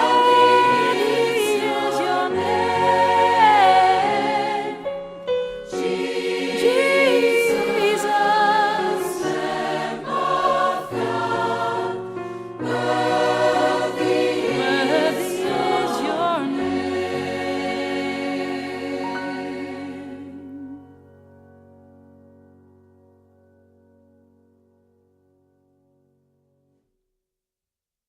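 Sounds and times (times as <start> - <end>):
choir singing worship song: 0.0 - 20.9.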